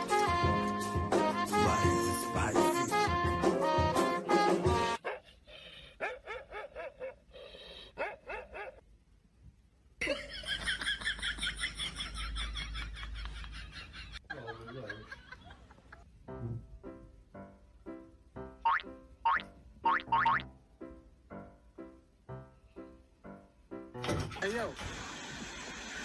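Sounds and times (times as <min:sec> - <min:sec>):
laughter in rapid bursts: 0:10.0 - 0:16.1.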